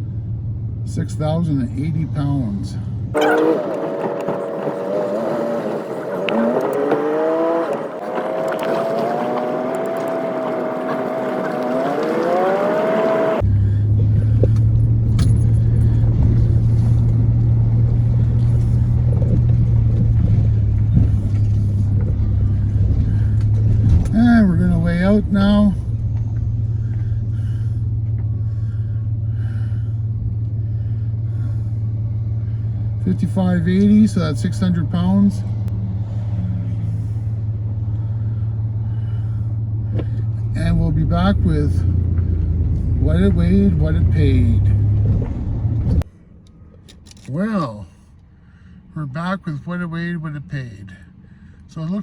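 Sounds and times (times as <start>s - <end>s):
pickup engine revving under load: 3.1s - 46.1s.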